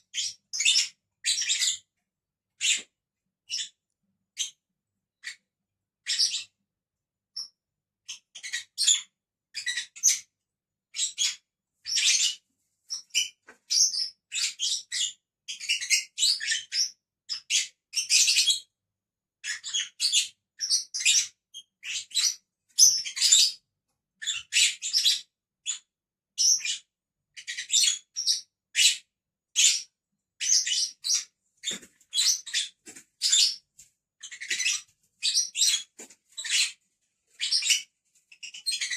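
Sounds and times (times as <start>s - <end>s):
lovebirds chirping: 0.0s - 1.9s, 2.6s - 2.9s, 11.0s - 18.6s, 19.5s - 23.6s, 26.4s - 36.8s, 37.4s - 38.9s.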